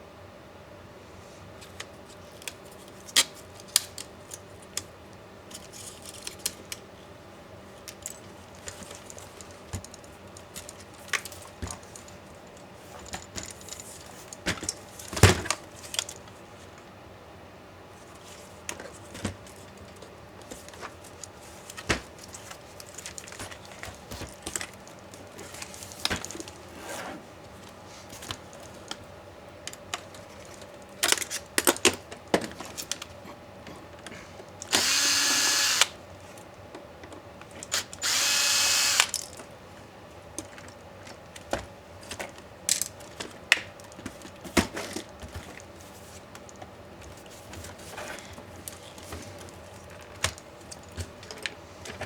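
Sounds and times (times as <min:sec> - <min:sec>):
electric screwdriver running: 0:34.7 - 0:36.0, 0:37.7 - 0:39.2.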